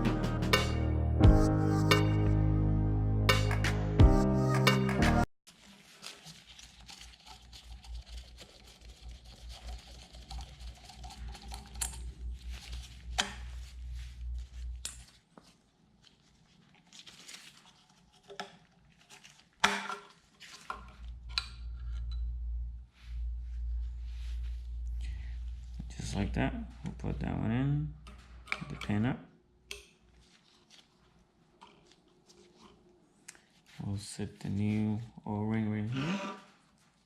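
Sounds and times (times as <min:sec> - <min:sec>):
low steady hum: 0:06.6 - 0:17.6, 0:20.6 - 0:36.0.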